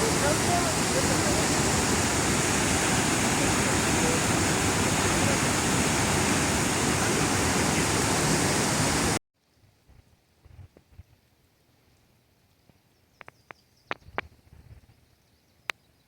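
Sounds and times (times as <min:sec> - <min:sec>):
waterfall rushing: 0:00.0 - 0:09.2.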